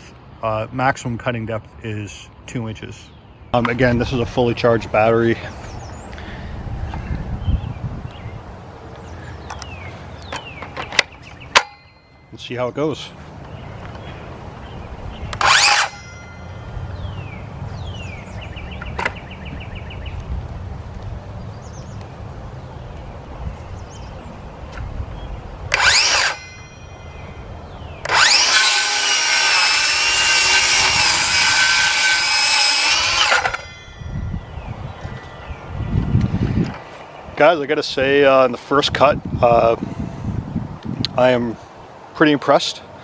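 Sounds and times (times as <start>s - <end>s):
circular saw motor spinning up: 15.3s - 16.4s, 25.7s - 26.7s, 28.0s - 34.0s
circular saw cutting wood: 15.3s - 16.7s, 25.7s - 27.0s, 28.0s - 34.1s.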